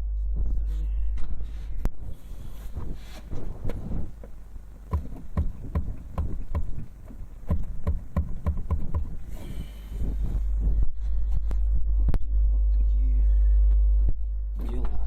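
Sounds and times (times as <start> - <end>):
steering rack knocking: 3.6 - 9.3.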